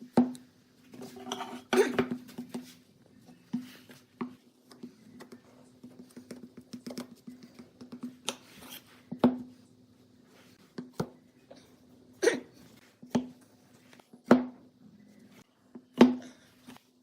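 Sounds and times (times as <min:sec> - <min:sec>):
tools and wood clattering: 0:00.9 - 0:02.6.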